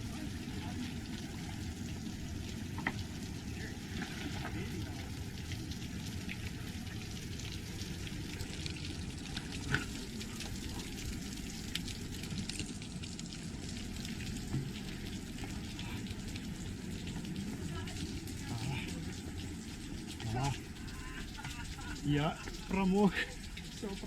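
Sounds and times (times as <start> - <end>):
light rain on leaves: 0.0 - 24.0
water dripping from trees: 0.0 - 24.0.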